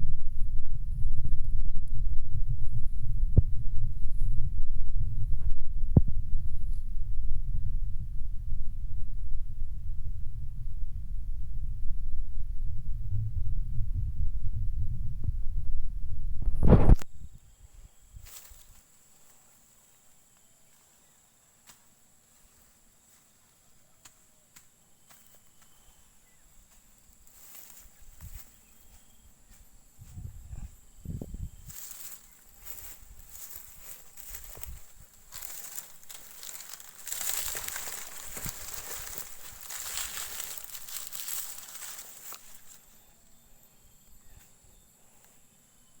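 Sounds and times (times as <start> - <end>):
low rumbling thuds: 0.1 - 17.0
high insect drone: 15.7 - 46.0
rustling and small crackles: 26.6 - 30.8, 31.7 - 43.0.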